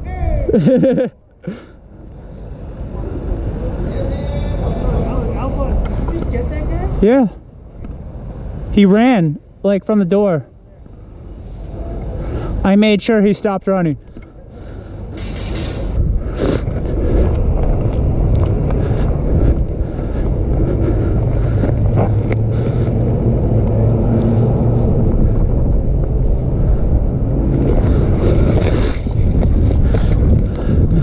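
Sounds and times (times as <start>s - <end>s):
low engine-like rumble: 10.4s - 12.8s, 13.9s - 31.0s.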